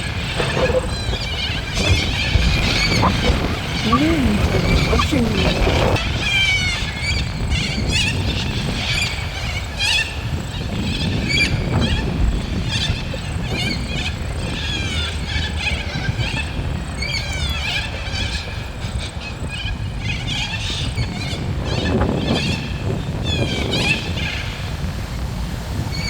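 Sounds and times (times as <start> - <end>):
wind rumble on microphone: 0.0 - 26.0
parrots screeching: 0.7 - 5.8.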